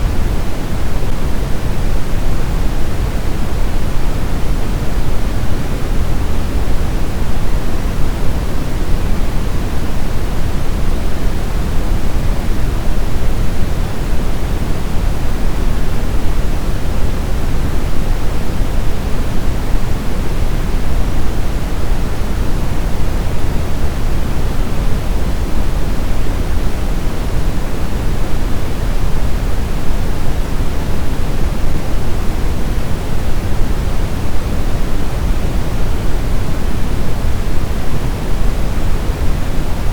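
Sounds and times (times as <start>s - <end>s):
steady low hiss noise: 0.0s - 39.9s.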